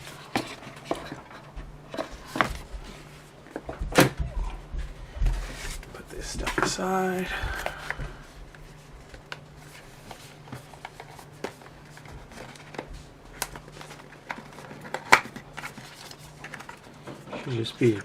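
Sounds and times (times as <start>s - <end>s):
faint low hum: 0.0s - 18.0s
hands handling packaging: 5.4s - 18.0s.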